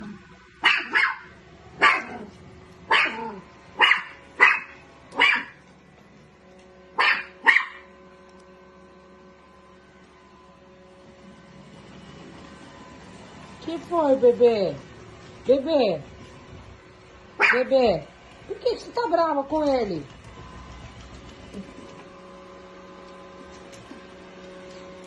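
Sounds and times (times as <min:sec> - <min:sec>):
dog barking angrily: 0:00.6 - 0:05.6, 0:07.0 - 0:07.9, 0:17.4 - 0:17.7.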